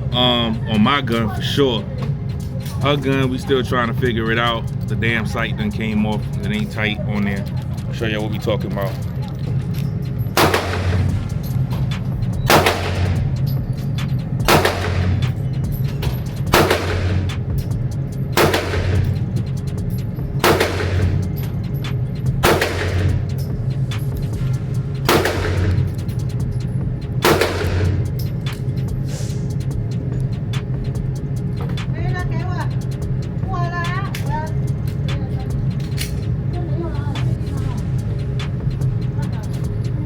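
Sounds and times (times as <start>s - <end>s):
handgun shots with echo: 10.4s - 11.2s, 12.5s - 13.2s, 14.5s - 15.3s, 16.5s - 17.2s, 18.4s - 19.1s, 20.4s - 21.2s, 22.4s - 23.2s, 25.1s - 25.8s, 27.2s - 27.9s.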